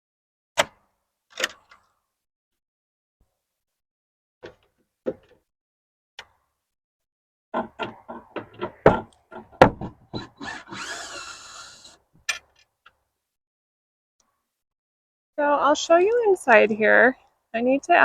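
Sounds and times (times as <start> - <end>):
wooden knocks and clunks: 4.4 - 5.4, 7.6 - 11.0.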